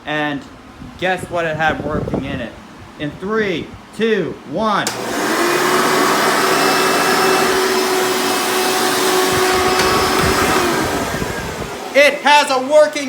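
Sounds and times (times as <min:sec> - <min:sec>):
vacuum cleaner motor whining: 0:04.9 - 0:13.0.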